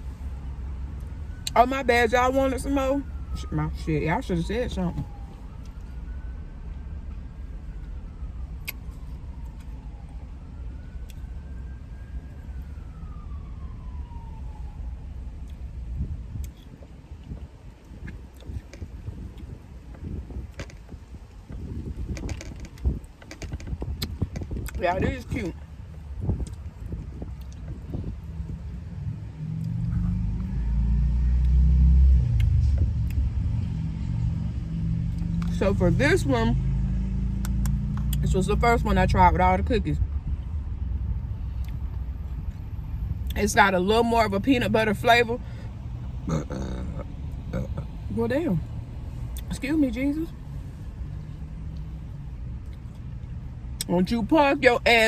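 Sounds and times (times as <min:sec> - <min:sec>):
siren wailing: 0:00.0 - 0:16.2, 0:18.2 - 0:39.4
steady low rumble: 0:00.0 - 0:55.0.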